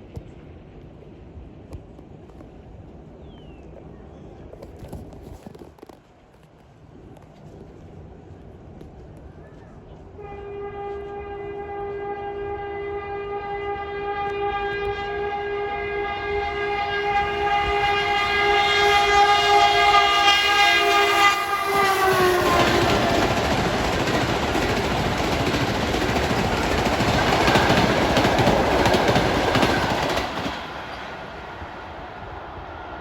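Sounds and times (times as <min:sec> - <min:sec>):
train horn blast: 0:10.2 - 0:24.0
train rushing past: 0:11.3 - 0:33.0
train wheel clatter: 0:21.6 - 0:31.3.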